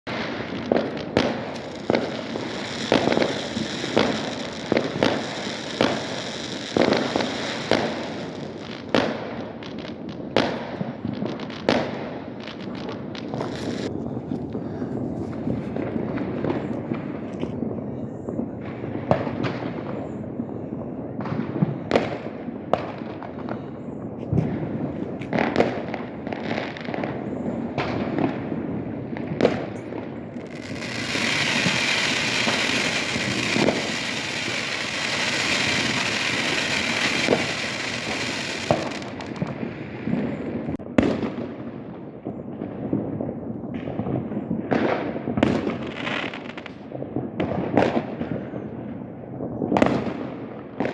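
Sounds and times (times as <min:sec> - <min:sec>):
firework bangs: 0:00.1 - 0:50.9
dense steady hiss: 0:30.2 - 0:40.4.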